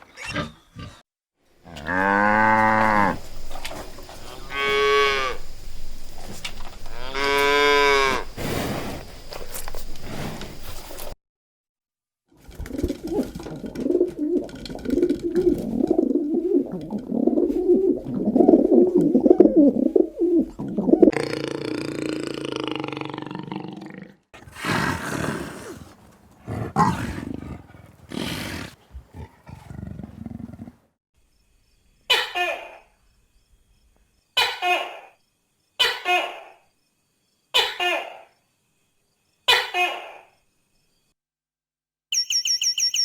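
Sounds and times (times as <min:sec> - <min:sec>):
animal calls: 0:24.4 - 0:30.8.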